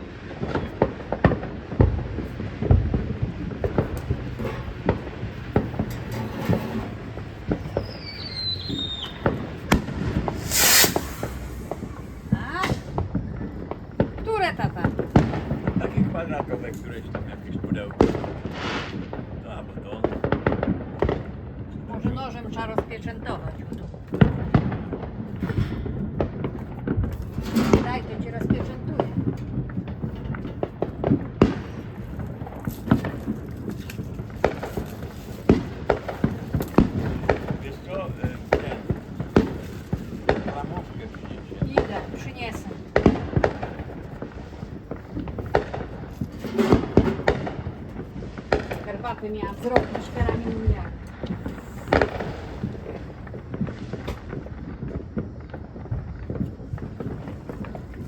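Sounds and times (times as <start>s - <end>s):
fireworks pops and bangs: 0.0s - 58.0s.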